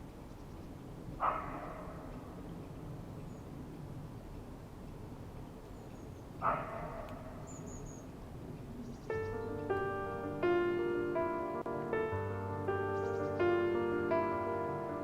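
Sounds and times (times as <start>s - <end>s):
faint high bird chirp: 0.2s - 3.6s, 5.6s - 9.8s, 12.9s - 13.5s.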